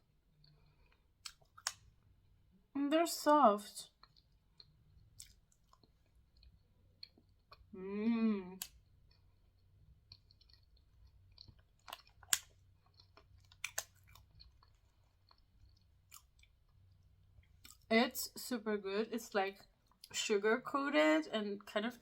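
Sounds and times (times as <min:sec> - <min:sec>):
person chewing: 0:00.3 - 0:02.1, 0:04.0 - 0:07.7, 0:08.4 - 0:17.9.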